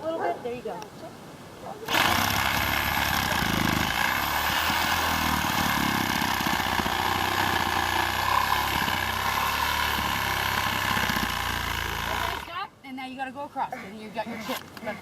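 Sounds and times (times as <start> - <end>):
power saw cutting tree: 1.9 - 12.5.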